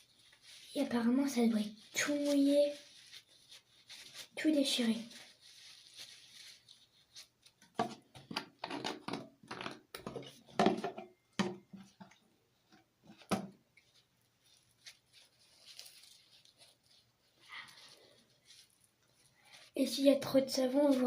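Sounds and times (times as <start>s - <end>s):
wet paper squishing by hand: 0.0s - 8.2s, 13.1s - 21.0s.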